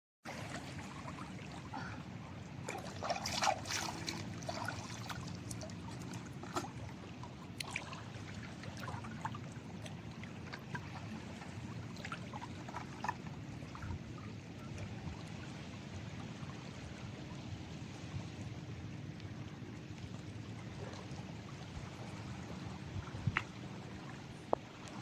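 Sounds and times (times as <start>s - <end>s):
water trickling and splashing: 0.2s - 25.0s.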